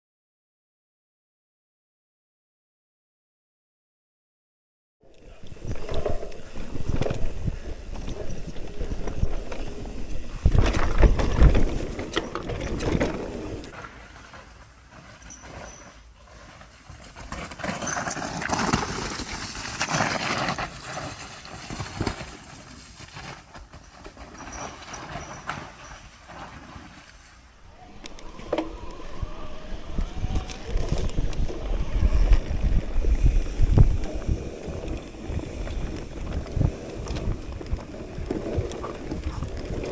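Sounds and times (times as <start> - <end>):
bike rattling on rough trail: 5.1 - 39.9
disc brakes squealing: 5.2 - 14.2, 15.2 - 16.0.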